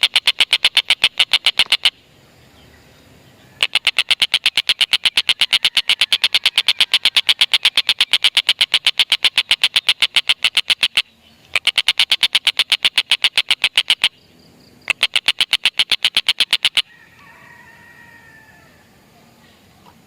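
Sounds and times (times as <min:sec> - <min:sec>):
kingfisher cackling call: 0:03.5 - 0:14.1, 0:14.9 - 0:16.9.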